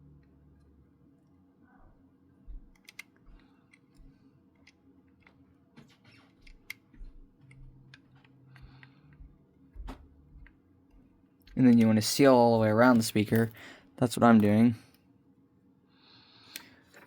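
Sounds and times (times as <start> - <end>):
faint steady hum: 0.0 - 17.0
plastic parts clicking and tapping: 2.7 - 10.6.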